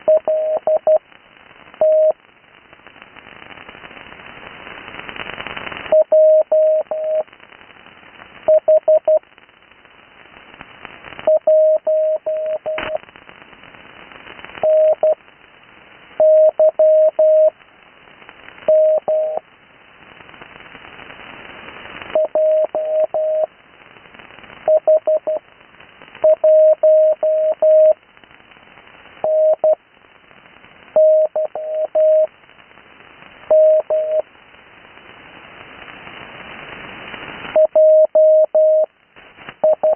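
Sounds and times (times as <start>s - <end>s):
radio receiver hiss: 0.0s - 39.9s.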